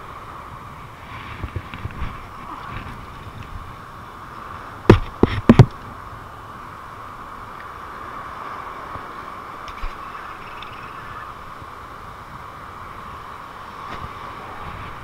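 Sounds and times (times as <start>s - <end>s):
steady background hiss: 0.0s - 15.0s
sharp knocks: 4.9s - 5.7s.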